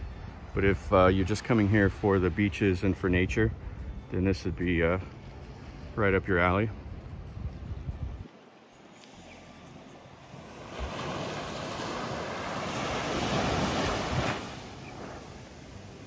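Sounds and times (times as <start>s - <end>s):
sea waves breaking on beach: 8.4s - 16.0s.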